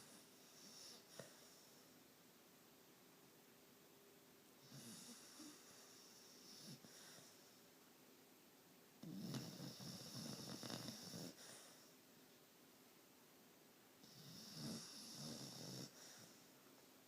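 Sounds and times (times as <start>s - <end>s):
snoring breaths: 9.0s - 11.9s, 14.0s - 16.5s.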